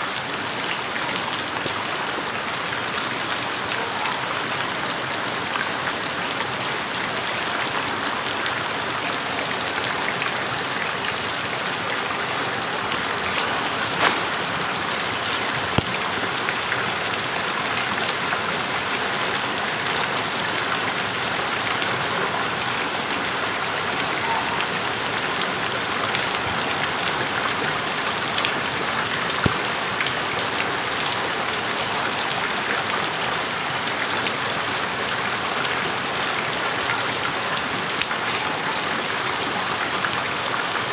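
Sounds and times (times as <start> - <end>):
steady rain pattering: 0.0 - 40.9
sharp raindrop taps: 12.9 - 14.8, 29.3 - 30.1.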